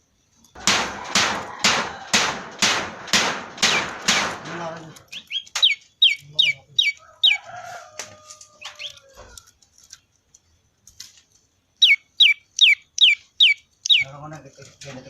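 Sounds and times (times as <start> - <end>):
faint rooster crowing: 0.7 - 2.6, 7.0 - 9.7.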